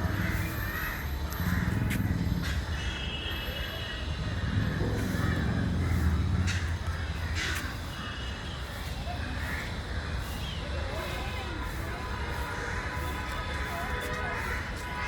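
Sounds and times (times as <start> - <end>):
harsh crow-like bird calls: 0.0 - 10.6.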